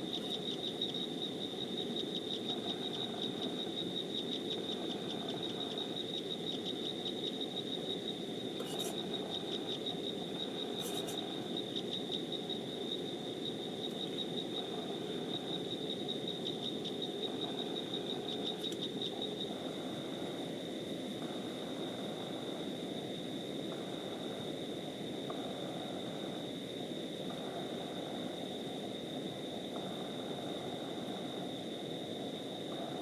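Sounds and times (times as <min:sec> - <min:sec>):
insect trilling: 0:00.0 - 0:20.6.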